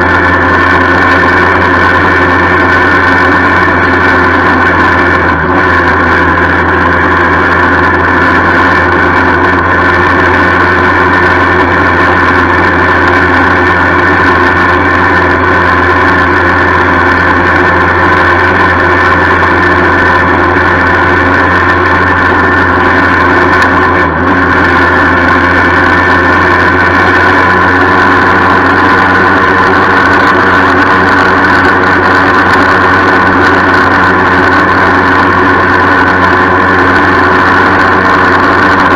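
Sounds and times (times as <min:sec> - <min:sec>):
engine rattle: 0:00.0 - 0:38.9
moped engine running: 0:00.0 - 0:38.9.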